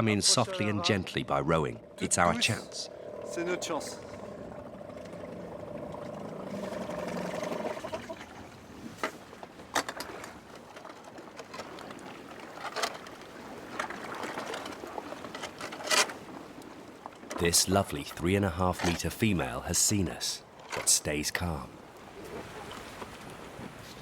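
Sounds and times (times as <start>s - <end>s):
water: 0.0s - 24.0s
boat motor humming: 0.6s - 8.8s.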